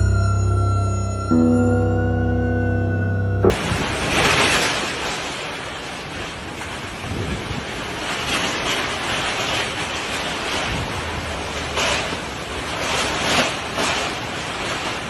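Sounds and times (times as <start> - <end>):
heavy rain pouring: 3.6 - 15.0
strong wind: 6.3 - 12.4.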